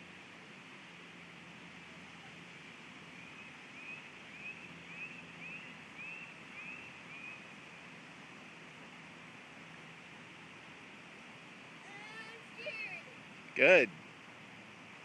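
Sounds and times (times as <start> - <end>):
faint outdoor background noise: 0.0 - 15.0
bird whistling calls: 3.8 - 7.4.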